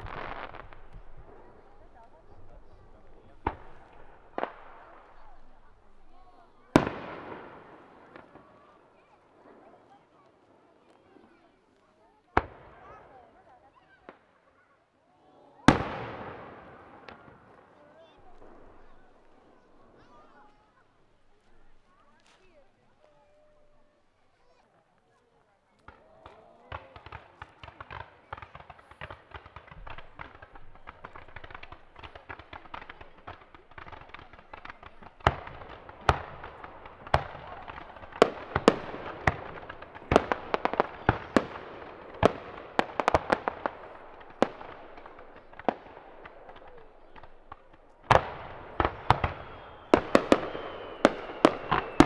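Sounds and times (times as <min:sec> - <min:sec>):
fireworks crackling: 0:00.0 - 0:14.2, 0:15.6 - 0:24.6, 0:25.7 - 0:52.0
loud firework shell bursts: 0:27.0 - 0:52.0.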